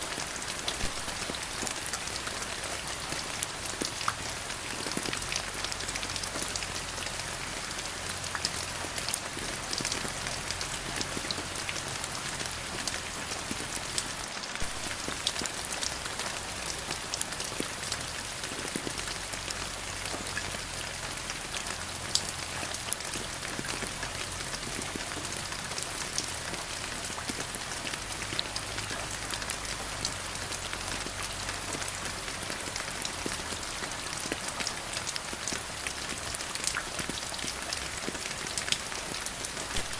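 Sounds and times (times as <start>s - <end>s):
steady rain patter: 0.0s - 39.9s.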